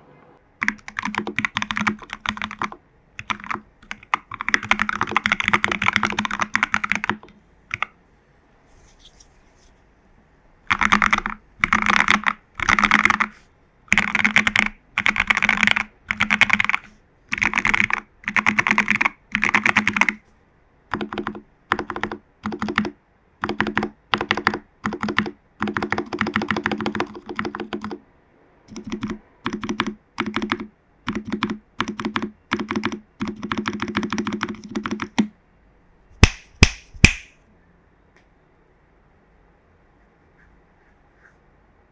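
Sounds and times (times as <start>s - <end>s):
mechanical keyboard typing: 0.6s - 7.9s, 10.6s - 13.3s, 13.9s - 20.2s, 20.9s - 28.0s, 28.7s - 35.3s.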